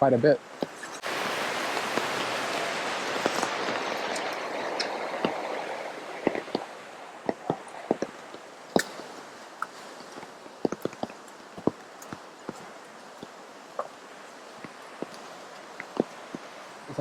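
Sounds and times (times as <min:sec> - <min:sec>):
steady rain hiss: 0:00.0 - 0:17.0
drips tapping: 0:00.4 - 0:17.0.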